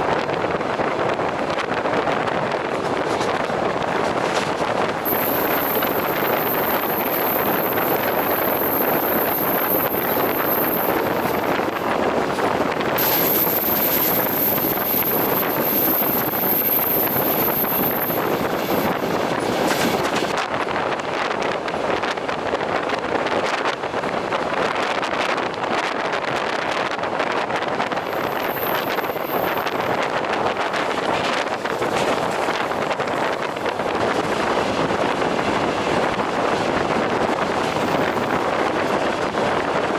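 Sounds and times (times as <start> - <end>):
train rumble and air rush: 0.0 - 39.9
train wheels clattering over rail joints: 2.6 - 5.0.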